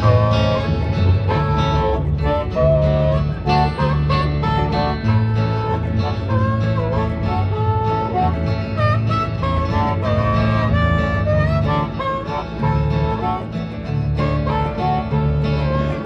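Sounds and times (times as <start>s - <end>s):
acoustic guitar playing: 0.0s - 16.0s
bass rhythm: 0.0s - 16.0s.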